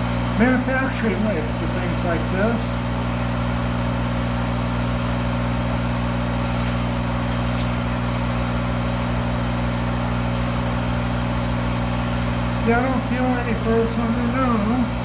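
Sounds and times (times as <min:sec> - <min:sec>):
lathe running with hum: 0:00.0 - 0:15.0
scratchy hisses of emery cloth: 0:02.5 - 0:13.6.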